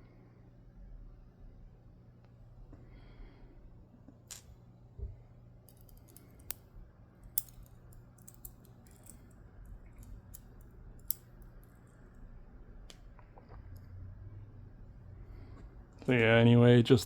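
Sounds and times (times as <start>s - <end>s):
faint low hum: 0.0s - 17.0s
metallic clicks on lock cylinder: 5.7s - 6.7s, 7.3s - 9.4s, 10.0s - 11.5s.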